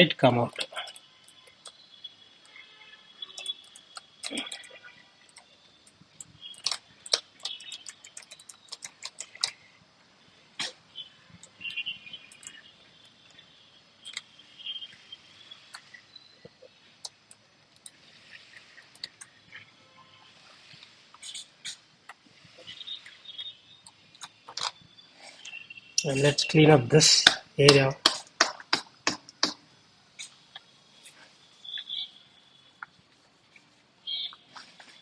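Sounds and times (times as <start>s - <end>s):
bird chirps: 0.7s - 9.4s, 10.9s - 12.8s, 13.4s - 16.9s, 22.5s - 26.7s, 30.9s - 32.9s, 34.0s - 35.0s
laptop keys clicking: 3.4s - 9.7s, 11.4s - 13.4s, 18.7s - 19.6s.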